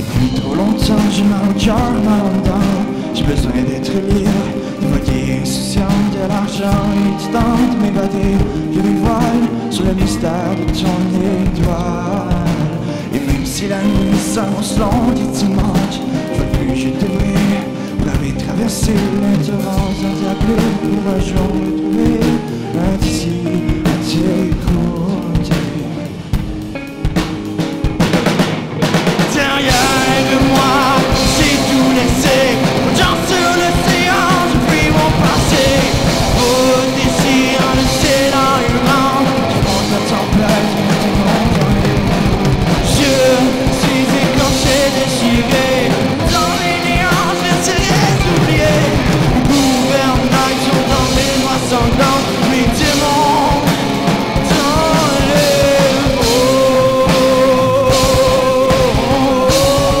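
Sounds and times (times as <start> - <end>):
rock band playing live: 0.0 - 60.0.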